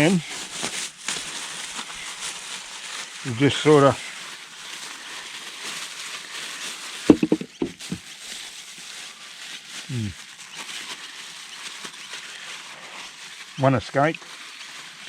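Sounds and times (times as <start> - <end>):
plastic bag rustling and crinkling: 0.0 - 15.0.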